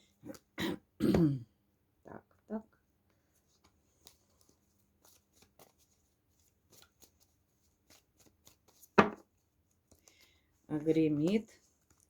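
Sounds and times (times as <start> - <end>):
cards shuffling: 3.6 - 10.2.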